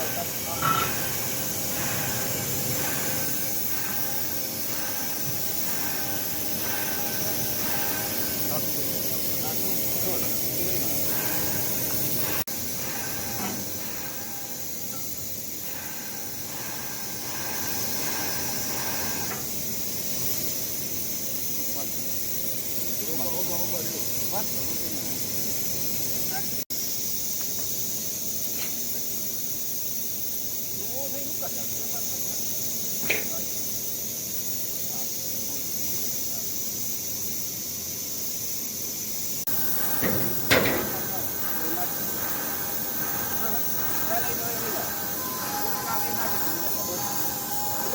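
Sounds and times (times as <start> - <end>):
industrial plant hissing: 0.0 - 47.9.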